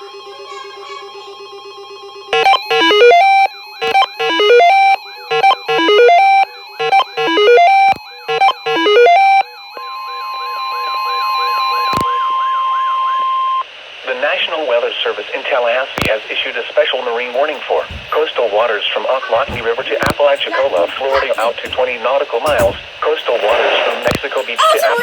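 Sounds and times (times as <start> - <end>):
steady high alarm tone: 0.0 - 13.6, 16.2 - 25.0
faint warbling background tune: 17.0 - 25.0.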